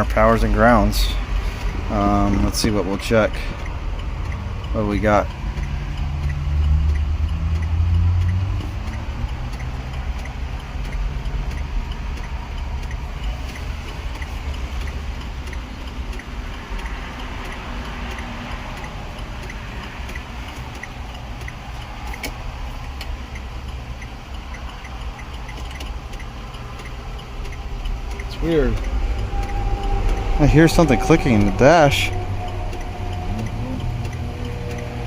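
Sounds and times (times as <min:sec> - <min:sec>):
dashboard clicking: 0:09.5 - 0:23.4
low rumble: 0:25.9 - 0:35.0.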